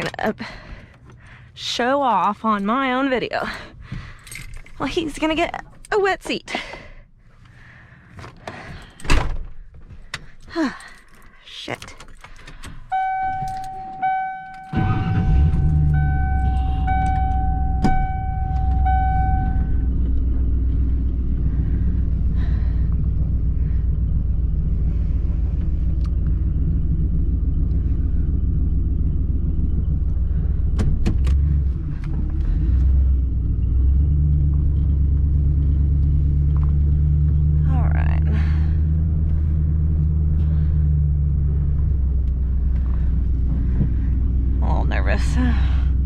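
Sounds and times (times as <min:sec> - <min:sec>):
truck engine starting and running: 0:00.0 - 0:46.0
vehicle warning chime dinging: 0:12.9 - 0:20.6.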